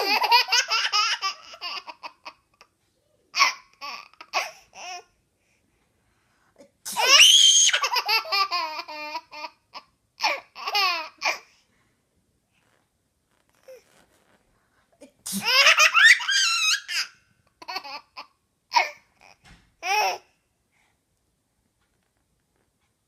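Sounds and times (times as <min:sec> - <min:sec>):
baby laughing: 0:00.0 - 0:02.7, 0:07.0 - 0:11.4, 0:15.4 - 0:19.0
fake sneezes: 0:06.8 - 0:07.4, 0:15.0 - 0:15.8.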